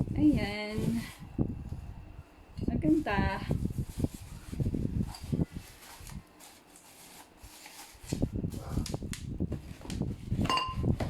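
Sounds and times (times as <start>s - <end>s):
rustling of packaging: 3.5s - 8.8s.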